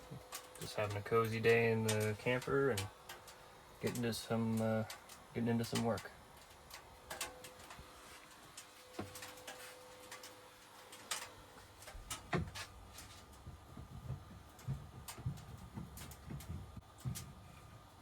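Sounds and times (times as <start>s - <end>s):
light clicks and taps: 0.3s - 17.8s
soft low thumps: 13.4s - 17.9s.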